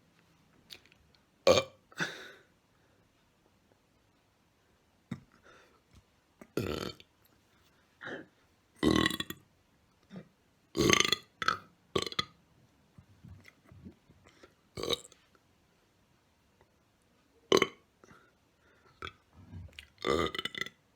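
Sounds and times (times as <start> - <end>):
person burping: 1.5 - 2.4, 6.6 - 7.0, 8.1 - 9.4, 10.1 - 12.2, 14.8 - 15.2, 17.5 - 17.8, 19.4 - 20.8.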